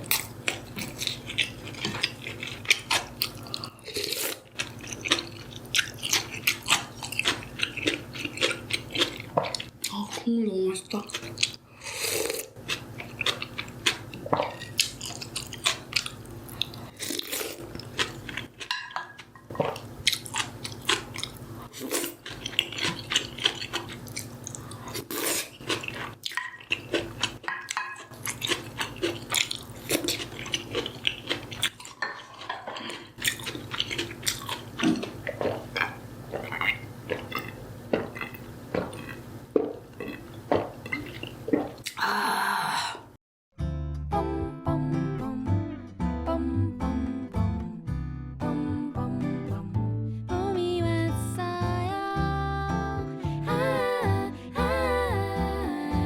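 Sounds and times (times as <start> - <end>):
person chewing food: 0.0 - 10.3, 10.9 - 42.0
steady low hum: 53.0 - 56.0.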